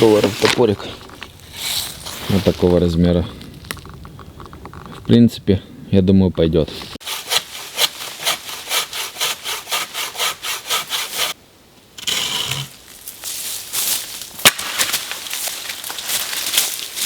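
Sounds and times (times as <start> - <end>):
bow saw cutting wood: 7.0 - 11.4
sharp crack: 14.2 - 17.0.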